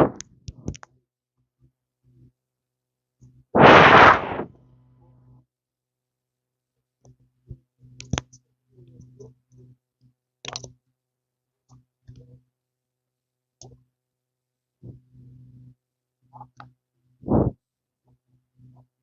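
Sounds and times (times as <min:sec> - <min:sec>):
small objects clicking and tapping: 0:10.4 - 0:10.7.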